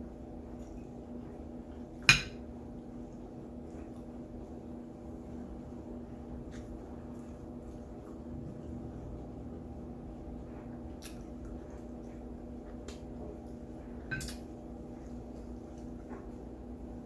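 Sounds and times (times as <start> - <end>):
steady low hum: 0.0 - 17.0
cutlery clicking on a plate: 14.1 - 14.4.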